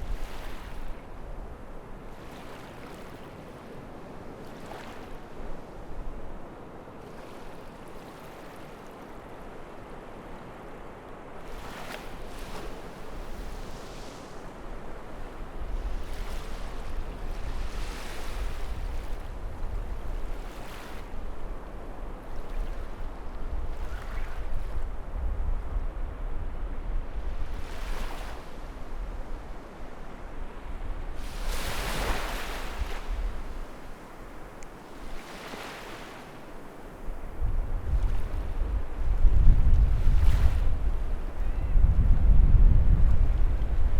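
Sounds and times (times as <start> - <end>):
sea waves breaking on beach: 31.1 - 38.7
wind rumble: 37.4 - 43.9.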